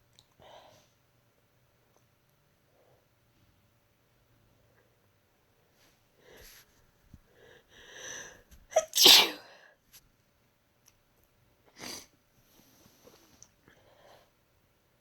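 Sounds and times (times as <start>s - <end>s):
woman sneezing: 8.8s - 9.5s.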